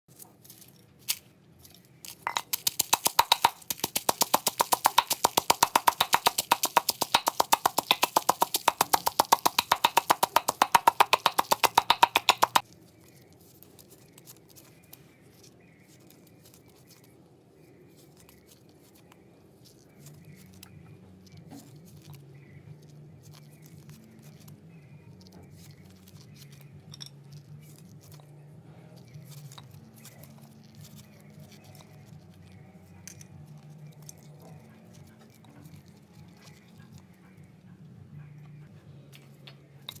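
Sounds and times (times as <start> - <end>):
rapid even knocking: 2.3 - 12.6.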